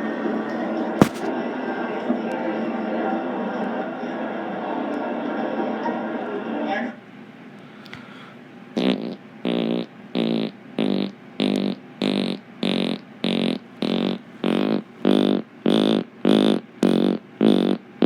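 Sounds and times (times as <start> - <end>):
imitation fart noises: 1.0 - 1.3, 8.8 - 17.8.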